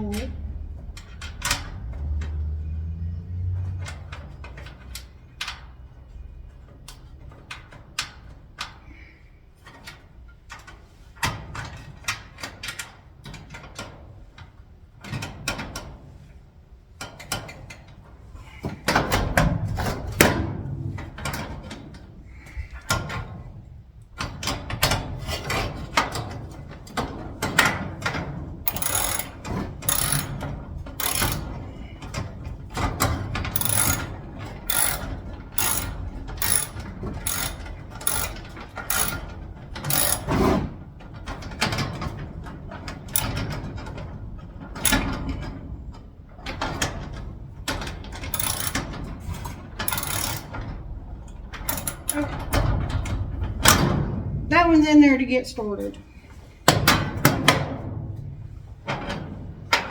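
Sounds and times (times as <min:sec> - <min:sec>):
screwdriver ratcheting clicks: 0:28.7 - 0:31.5, 0:33.5 - 0:40.4, 0:43.1 - 0:43.4, 0:44.9 - 0:45.2, 0:48.4 - 0:48.8, 0:49.9 - 0:50.6, 0:51.7 - 0:52.4.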